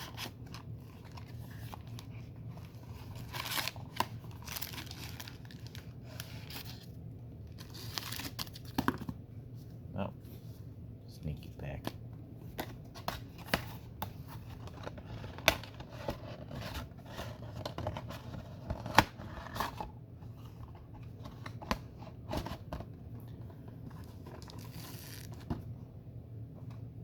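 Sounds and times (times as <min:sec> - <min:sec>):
card wrappers crinkling and ripping: 0:00.0 - 0:09.0, 0:24.0 - 0:25.5.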